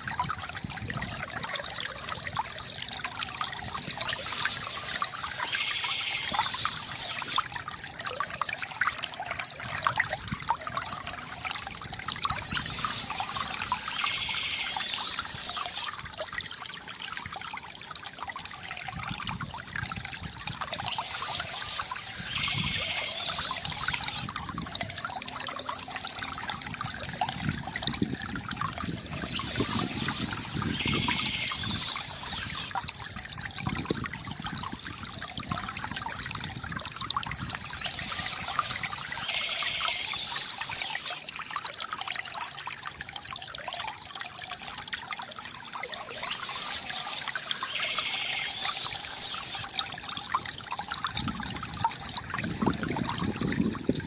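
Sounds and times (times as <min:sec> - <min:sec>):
stream trickling and splashing: 0:00.0 - 0:54.0
bird singing: 0:03.8 - 0:07.5, 0:12.3 - 0:15.9, 0:20.6 - 0:24.3, 0:29.1 - 0:32.8, 0:37.5 - 0:41.2, 0:46.0 - 0:49.8.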